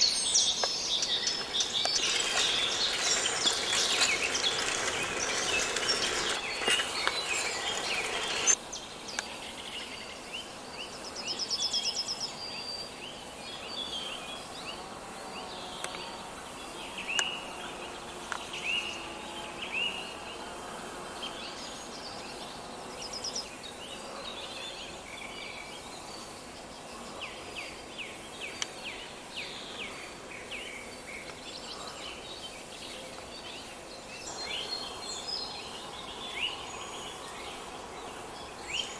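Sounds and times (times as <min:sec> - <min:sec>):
birds chirping and singing: 0:00.0 - 0:08.6
steady background hiss: 0:00.0 - 0:38.9.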